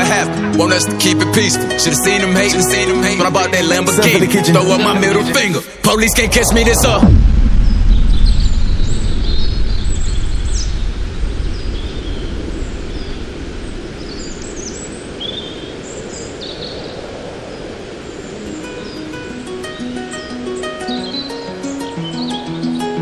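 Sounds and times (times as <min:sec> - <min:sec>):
low steady rushing noise: 0:05.7 - 0:19.8
birds chirping: 0:05.9 - 0:23.0.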